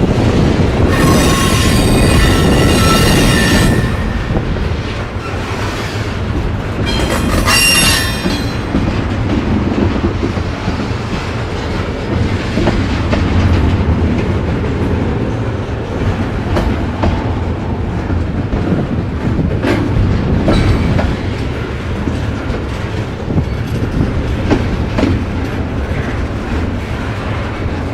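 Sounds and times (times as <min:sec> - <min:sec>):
clickety-clack over rail joints: 0:00.0 - 0:27.9
freight train wheels rumbling: 0:00.0 - 0:27.9
high-pitched wheel squeal: 0:00.9 - 0:04.2, 0:06.9 - 0:08.6.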